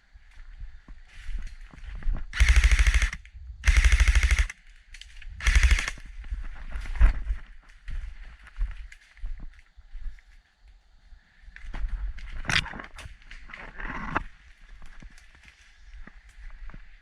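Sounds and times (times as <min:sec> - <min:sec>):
airsoft rifle automatic fire: 0:02.4 - 0:04.5, 0:05.4 - 0:06.0.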